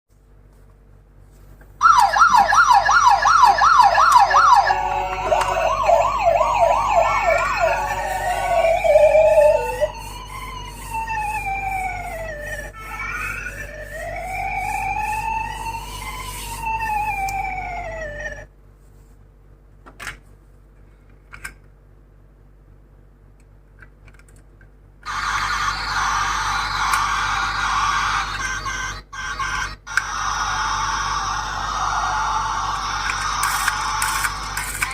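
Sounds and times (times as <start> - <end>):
toy ambulance siren: 1.8 - 18.5, 25.1 - 34.9
plastic toy cars clicking: 23.7 - 24.5, 33.0 - 34.9
loud steady rush of noise: 30.0 - 34.9.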